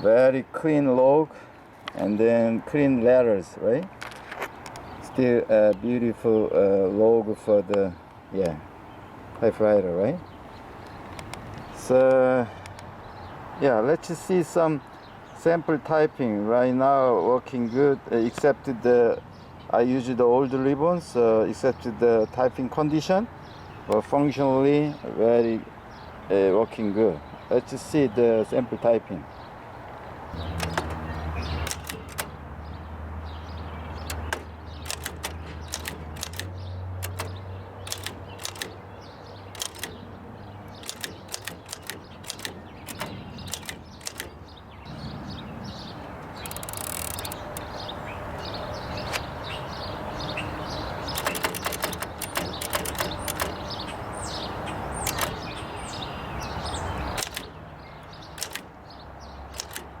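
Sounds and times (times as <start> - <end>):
typewriter keys clacking: 30.5 - 32.4, 34.0 - 38.8, 39.5 - 40.0, 40.7 - 44.4, 46.4 - 47.7, 51.1 - 53.6, 55.0 - 55.4, 57.2 - 57.5, 58.4 - 58.7, 59.5 - 60.0.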